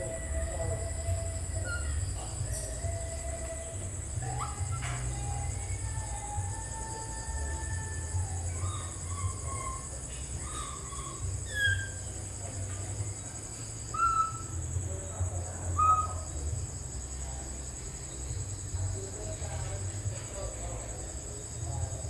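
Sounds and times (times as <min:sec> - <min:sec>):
baby monkey cooing and squeaking: 0:04.2 - 0:06.4, 0:07.5 - 0:12.3, 0:14.0 - 0:14.6.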